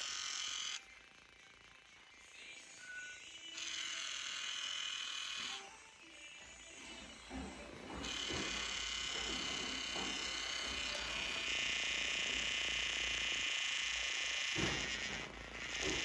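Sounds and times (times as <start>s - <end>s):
gimbal motor buzzing whine: 0.0s - 1.4s, 7.1s - 16.0s.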